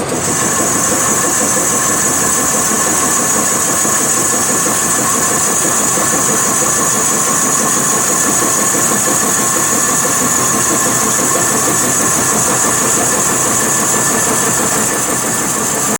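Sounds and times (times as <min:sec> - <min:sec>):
high-pitched machine whines: 0:00.0 - 0:15.9
wood lathe running: 0:00.0 - 0:15.9.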